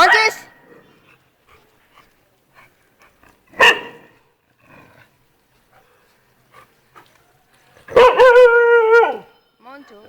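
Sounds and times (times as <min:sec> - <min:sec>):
dog barking: 0:03.5 - 0:04.2, 0:07.9 - 0:09.3.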